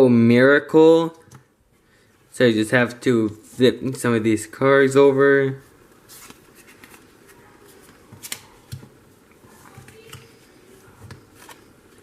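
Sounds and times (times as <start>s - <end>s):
cards rustling: 5.9s - 12.0s.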